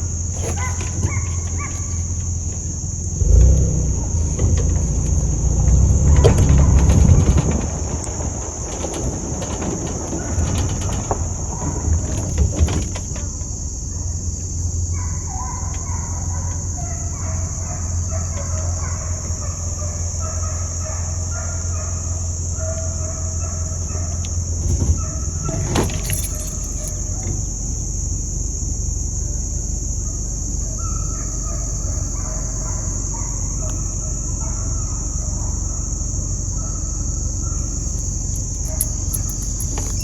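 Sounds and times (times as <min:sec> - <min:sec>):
distant hounds baying: 0:00.0 - 0:28.4, 0:29.0 - 0:40.0
insects droning: 0:00.0 - 0:40.0.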